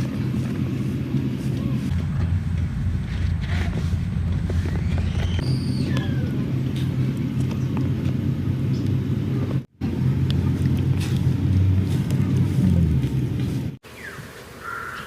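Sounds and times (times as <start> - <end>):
low engine drone: 0.0 - 13.8
high gliding chirps: 4.5 - 6.4.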